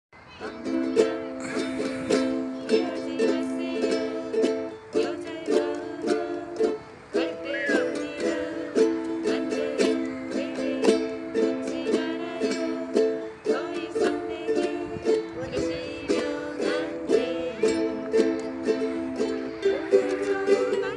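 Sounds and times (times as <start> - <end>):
ukulele chords strummed: 0.4 - 20.9.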